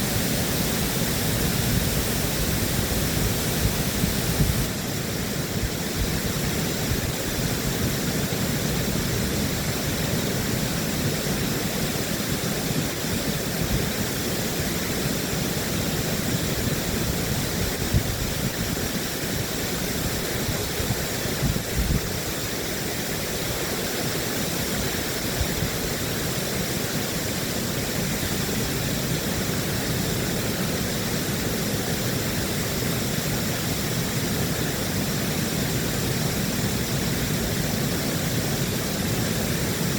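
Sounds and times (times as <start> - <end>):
water rushing through a dam: 0.0 - 39.9.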